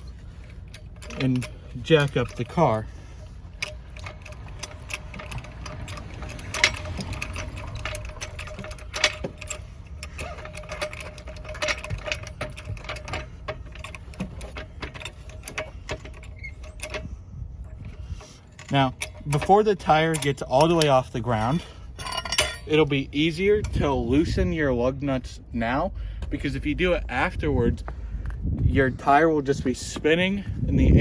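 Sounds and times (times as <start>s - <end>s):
car jack metal clicking: 0.0s - 22.9s.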